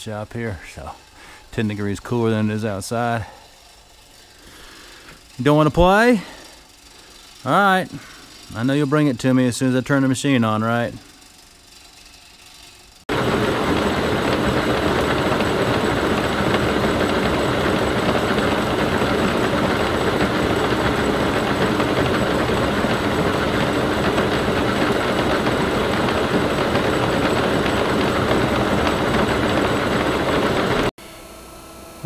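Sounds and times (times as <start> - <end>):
milling machine running: 11.3 - 30.9.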